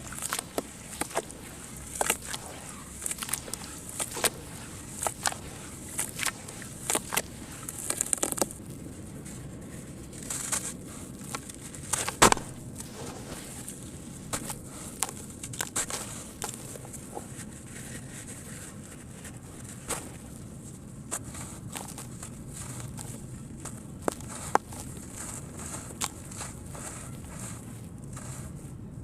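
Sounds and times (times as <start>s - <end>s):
cement lumps crumbling in water: 0.0s - 8.6s, 11.2s - 13.0s.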